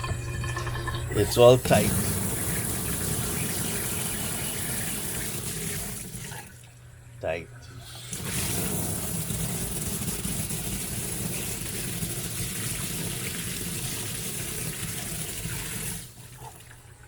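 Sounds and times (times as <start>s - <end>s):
water pipe droning: 0.0s - 17.0s
water rushing hiss: 1.2s - 6.4s, 7.8s - 16.2s.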